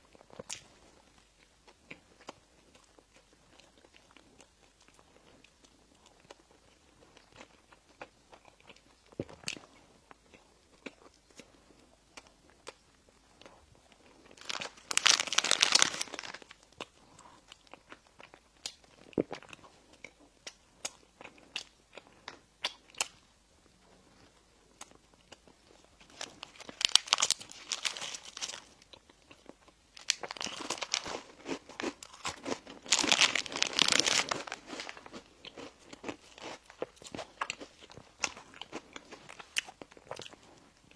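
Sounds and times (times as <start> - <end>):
chewing and biting: 0.1 - 23.2
crunchy crinkly bursts: 14.3 - 16.6, 26.1 - 28.8, 30.0 - 35.1.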